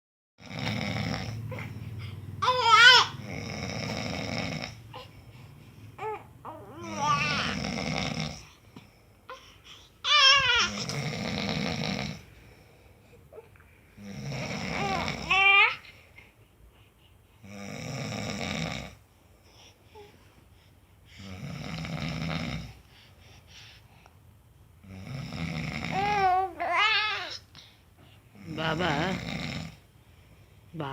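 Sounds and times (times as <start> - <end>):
man snoring: 0.4 - 1.8, 2.4 - 5.0, 6.8 - 8.5, 10.6 - 12.3, 14.0 - 15.5, 17.4 - 19.0, 21.2 - 22.8, 24.8 - 26.3, 28.4 - 29.8
baby squealing and cooing: 2.4 - 3.2, 6.0 - 7.6, 10.0 - 10.9, 14.7 - 15.8, 25.9 - 27.4.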